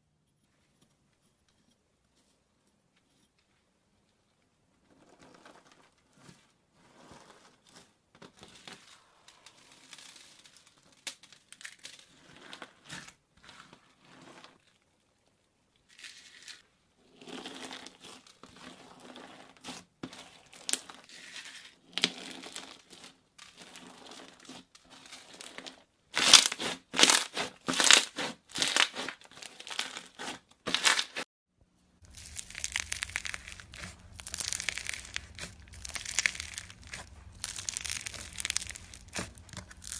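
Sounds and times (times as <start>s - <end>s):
slime squeezed by hand crackling: 26.2s - 31.2s, 32.1s - 39.9s.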